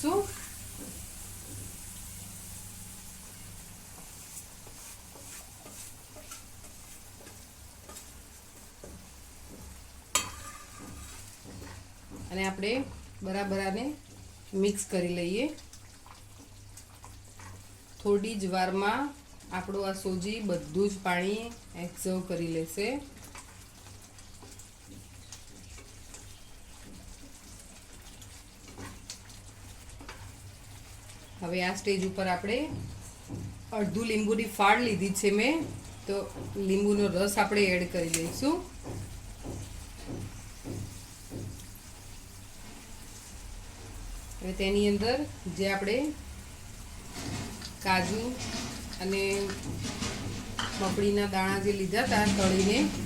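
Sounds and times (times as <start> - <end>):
simmering water hiss: 0.0 - 5.3
faint sizzle in a pan: 0.0 - 53.0.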